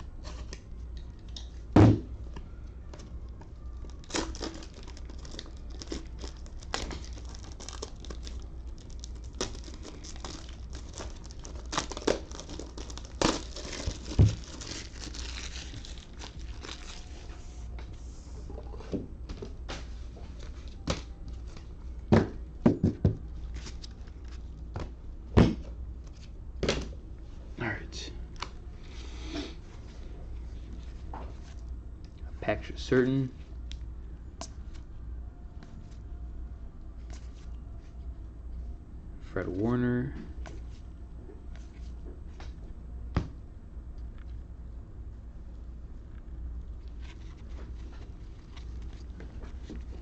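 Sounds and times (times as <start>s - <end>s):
plastic wrapper crinkling and tearing: 3.3s - 17.3s, 46.8s - 50.0s.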